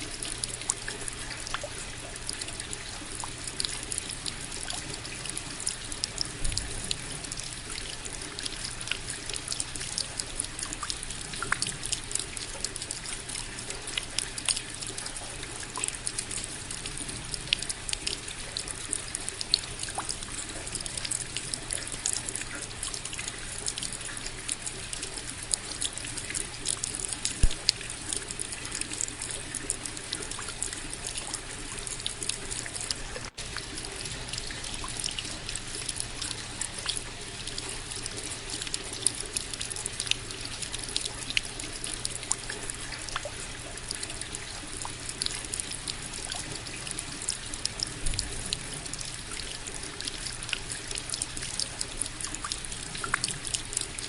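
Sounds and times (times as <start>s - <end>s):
steady rain falling: 0.0s - 42.8s
loud water drip: 0.0s - 54.0s.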